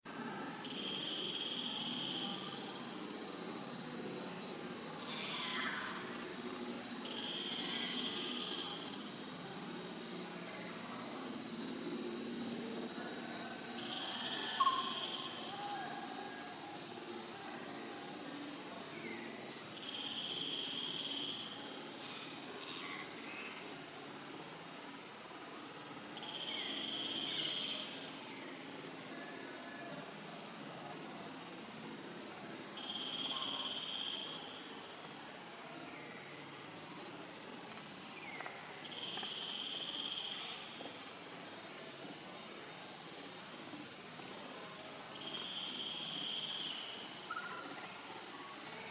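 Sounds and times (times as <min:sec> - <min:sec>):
crickets trilling: 0:00.1 - 0:48.9
second insect call: 0:00.2 - 0:03.0, 0:05.0 - 0:09.1, 0:13.2 - 0:17.0, 0:18.2 - 0:23.9, 0:26.2 - 0:30.2, 0:32.6 - 0:35.2, 0:37.6 - 0:48.9.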